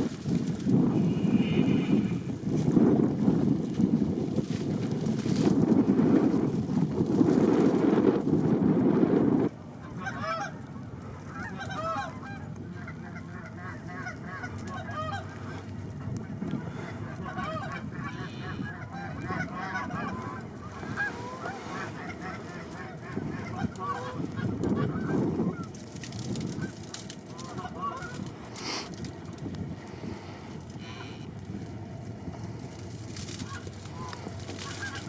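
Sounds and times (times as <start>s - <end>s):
wind noise on microphone: 0.0s - 35.0s
geese honking: 9.8s - 25.8s, 26.5s - 28.3s, 33.4s - 35.0s.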